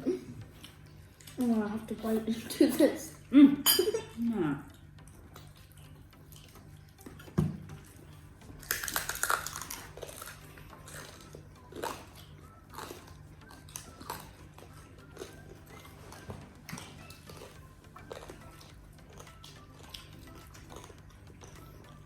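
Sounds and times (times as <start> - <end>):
crunching into crispy pork: 8.6 - 16.2.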